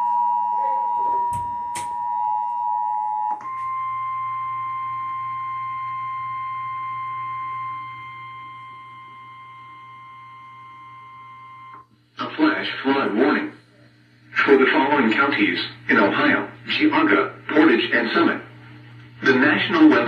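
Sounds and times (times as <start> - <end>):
two-tone alert signal: 0.0 - 8.6
steady warning tone: 0.0 - 20.0.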